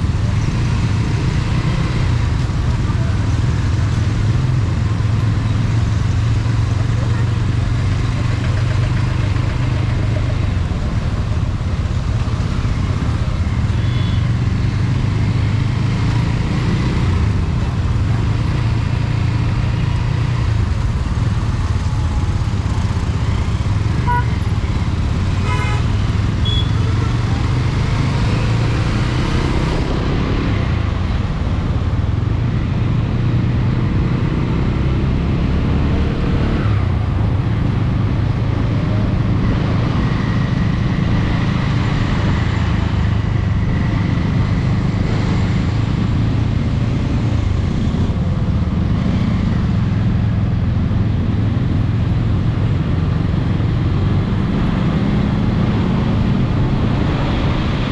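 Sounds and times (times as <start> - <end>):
motorcycle engine running: 0.0 - 28.6
road and traffic noise: 0.0 - 57.9.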